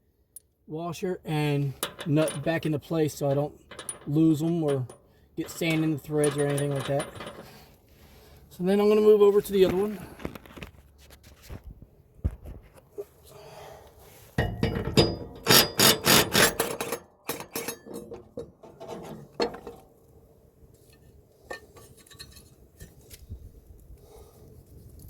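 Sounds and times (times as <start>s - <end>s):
metal tools clanking: 1.6s - 7.7s, 14.4s - 19.9s, 20.9s - 22.9s.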